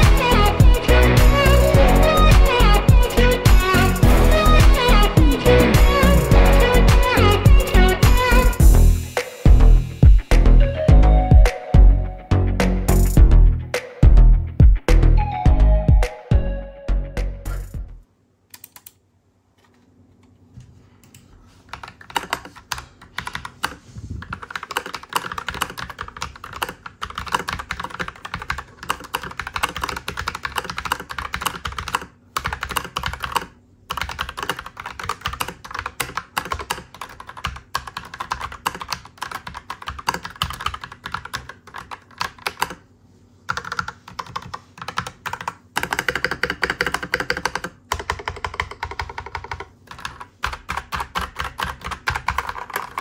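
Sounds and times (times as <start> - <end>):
mechanical keyboard typing: 18.5 - 19.0, 21.7 - 42.8, 43.5 - 53.0.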